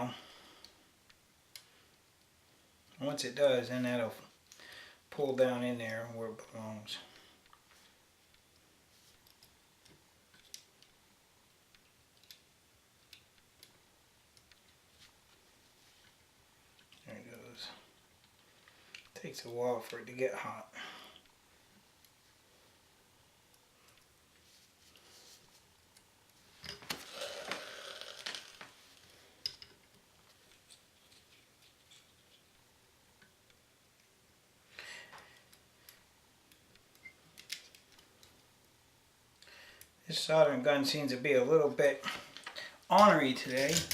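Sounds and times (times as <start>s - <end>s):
solder crackling sizzle: 21.1s - 30.4s.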